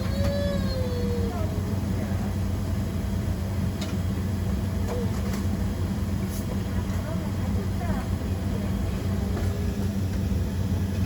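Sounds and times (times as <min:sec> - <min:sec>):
airplane cabin hum: 0:00.0 - 0:11.0
faint passenger voices: 0:00.0 - 0:11.0.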